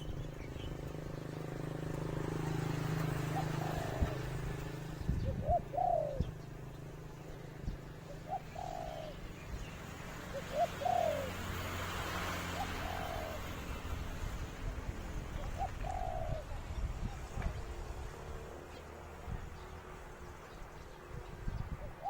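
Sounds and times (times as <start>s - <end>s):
dove cooing: 0.0s - 14.0s, 14.7s - 17.5s, 21.8s - 22.0s.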